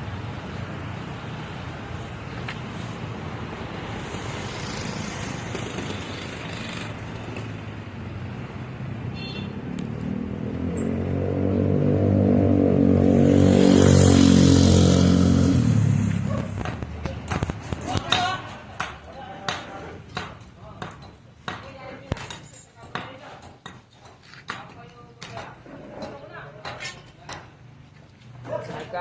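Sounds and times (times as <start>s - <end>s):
vehicle engine passing by: 2.8s - 17.2s.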